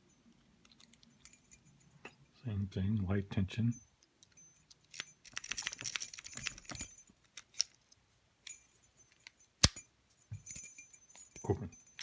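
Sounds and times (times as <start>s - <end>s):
light metallic jingle: 0.0s - 2.5s, 3.6s - 12.0s
lock pick rattling in padlock: 4.2s - 7.8s.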